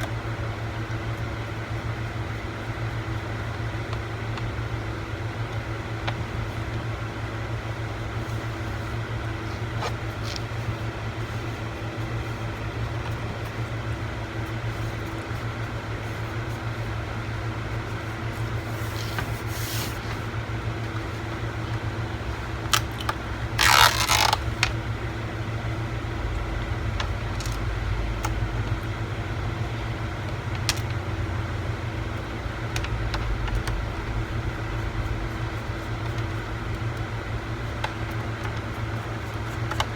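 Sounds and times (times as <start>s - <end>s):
steady background hum: 0.0s - 39.9s
scraping rustle: 17.8s - 20.4s.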